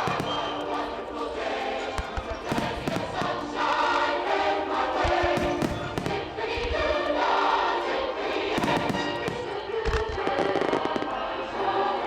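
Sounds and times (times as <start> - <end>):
firework shells bursting: 0.0 - 1.1, 1.9 - 4.0, 5.0 - 6.7, 8.5 - 11.2
choir singing sustained chords: 0.0 - 12.0.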